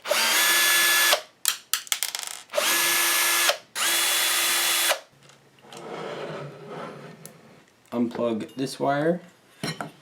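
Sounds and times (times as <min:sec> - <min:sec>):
cordless drill motor whine: 0:00.0 - 0:01.2, 0:02.5 - 0:05.0.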